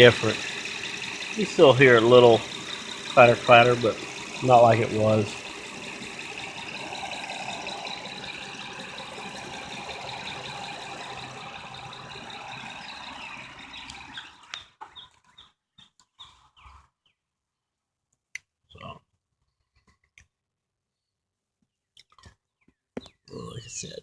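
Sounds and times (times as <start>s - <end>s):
car engine idling: 0.0s - 14.6s
light engine clatter: 0.0s - 14.7s.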